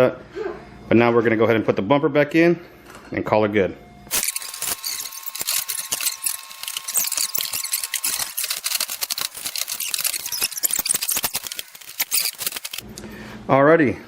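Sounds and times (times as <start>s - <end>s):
plastic clips clicking and rattling: 4.1s - 12.8s.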